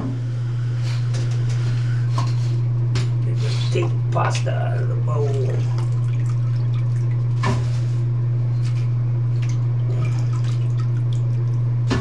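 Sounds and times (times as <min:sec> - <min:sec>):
low hum: 0:00.0 - 0:12.0
water dripping in toilet bowl: 0:05.1 - 0:07.4, 0:09.4 - 0:11.7.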